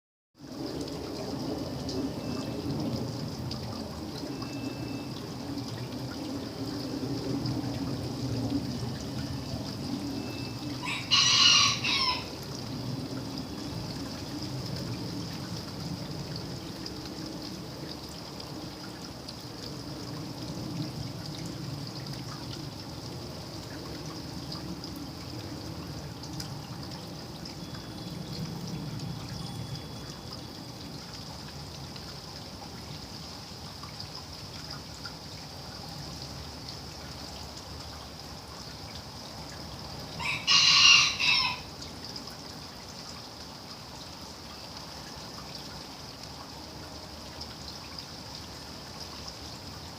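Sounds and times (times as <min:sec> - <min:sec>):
rain dripping and trickling: 0:00.4 - 0:49.9
rooster crowing: 0:10.8 - 0:12.4, 0:40.2 - 0:41.7.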